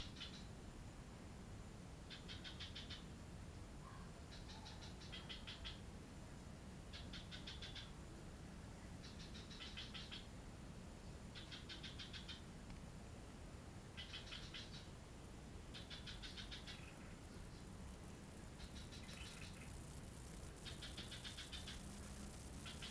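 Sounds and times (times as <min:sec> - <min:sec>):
animal calling in pulsed trills: 0:15.7 - 0:22.9.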